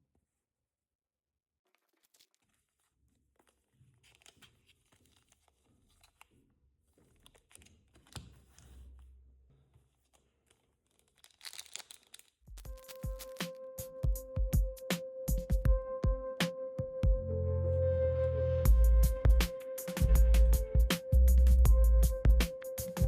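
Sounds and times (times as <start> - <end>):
packaging crinkling and tearing: 1.7 - 6.4, 10.0 - 13.6
small clicks and rustles: 1.7 - 9.0, 9.7 - 13.4.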